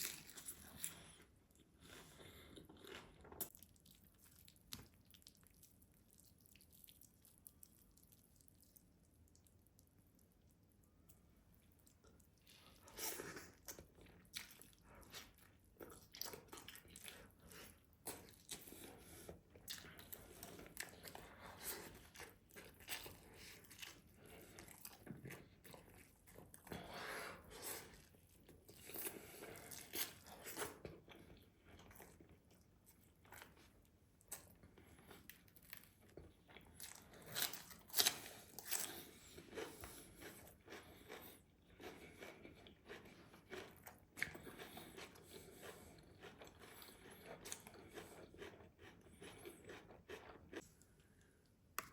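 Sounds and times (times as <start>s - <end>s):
close chewing and biting: 11.6s - 32.6s, 34.3s - 50.8s.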